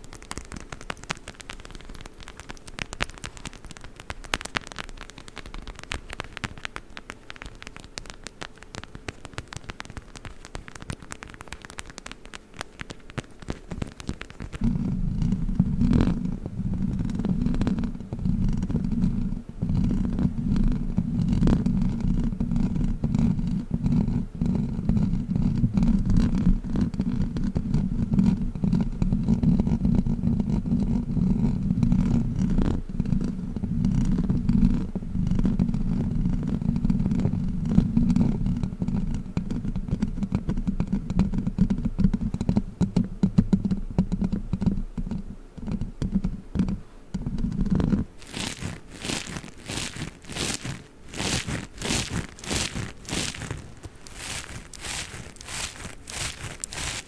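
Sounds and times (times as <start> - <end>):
toy scraping against microphone: 48.2 - 57.0.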